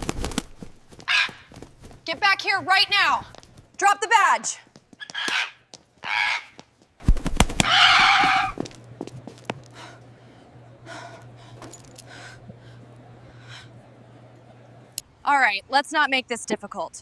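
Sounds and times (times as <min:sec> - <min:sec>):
parrot squawking: 0:01.1 - 0:01.5, 0:05.0 - 0:06.6, 0:07.6 - 0:08.6.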